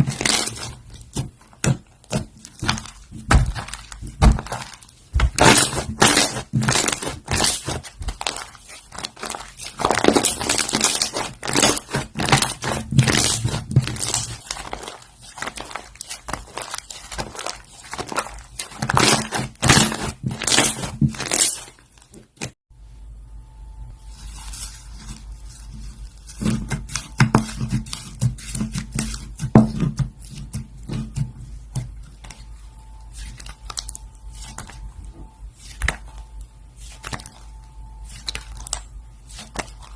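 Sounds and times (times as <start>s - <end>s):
slime crackling and popping: 0.0s - 22.5s, 33.0s - 34.8s, 35.6s - 39.9s
faint steady hum: 0.0s - 39.9s.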